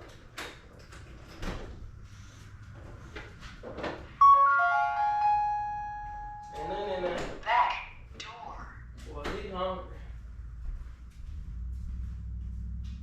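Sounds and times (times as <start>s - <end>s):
music with held chord: 4.2s - 6.5s.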